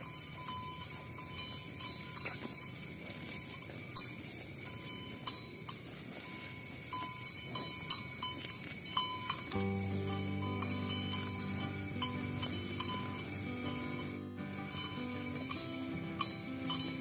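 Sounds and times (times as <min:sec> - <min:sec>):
cowbells clinking: 0:00.0 - 0:17.0
music: 0:09.4 - 0:17.0.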